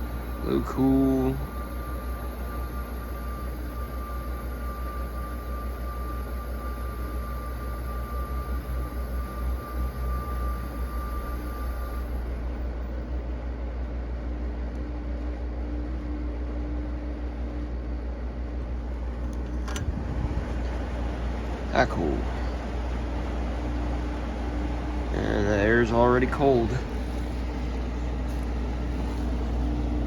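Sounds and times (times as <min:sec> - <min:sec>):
air conditioner humming: 0:00.0 - 0:30.0
click: 0:19.3 - 0:19.9.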